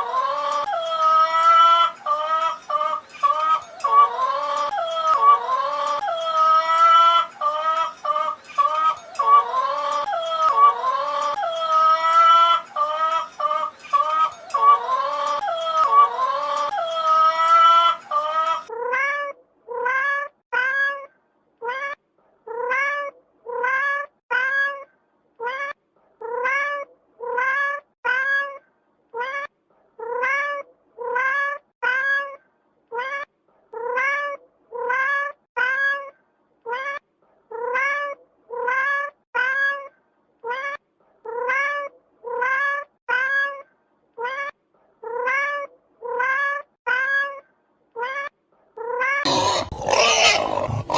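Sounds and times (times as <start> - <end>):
cat meowing: 18.6 - 28.6, 36.7 - 43.6, 44.2 - 47.4, 48.0 - 50.9.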